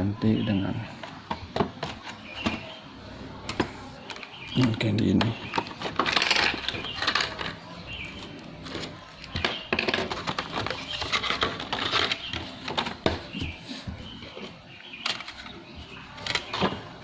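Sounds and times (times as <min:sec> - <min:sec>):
laptop parts clicking and knocking: 0:03.4 - 0:13.6.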